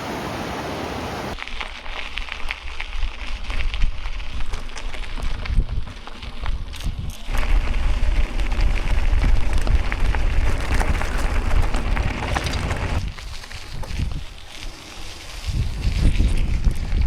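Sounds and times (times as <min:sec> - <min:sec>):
bicycle tyres crunching gravel: 0:01.4 - 0:17.0
wind rumble on microphone: 0:01.5 - 0:17.0.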